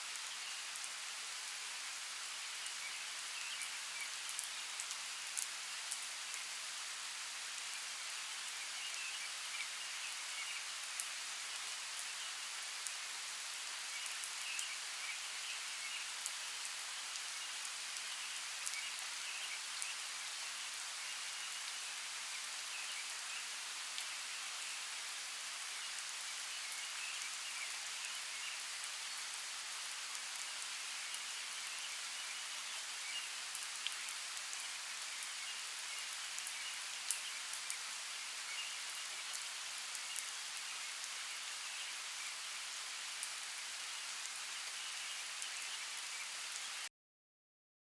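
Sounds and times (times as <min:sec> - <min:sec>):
steady rain falling: 0:00.0 - 0:46.9
sharp ticks of raindrops: 0:02.8 - 0:06.6, 0:08.8 - 0:13.0, 0:13.9 - 0:20.1, 0:33.0 - 0:37.9, 0:38.5 - 0:41.1.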